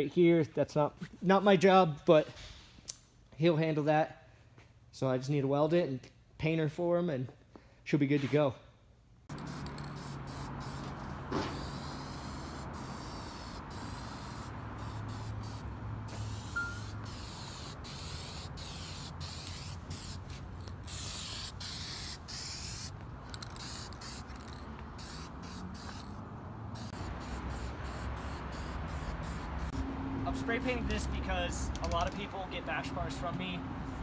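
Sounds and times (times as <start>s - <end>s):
spray paint hissing: 9.3s - 26.2s, 26.8s - 29.8s.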